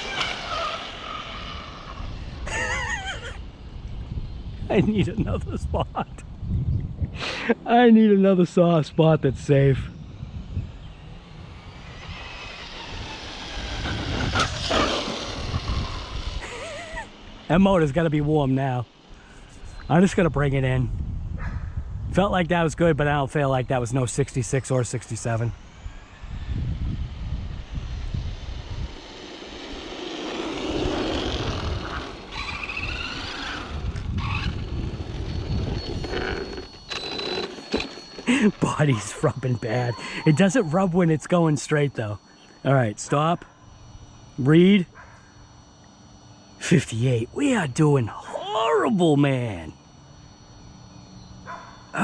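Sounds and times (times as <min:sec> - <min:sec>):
wind rumble on microphone: 0:00.0 - 0:07.9, 0:08.7 - 0:17.0, 0:19.4 - 0:23.3, 0:25.5 - 0:29.1, 0:30.7 - 0:37.3
electric motor whine: 0:00.0 - 0:52.0.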